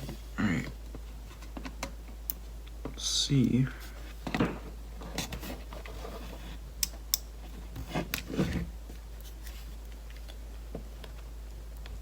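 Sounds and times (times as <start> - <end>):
rubbing and scraping: 5.0 - 6.6.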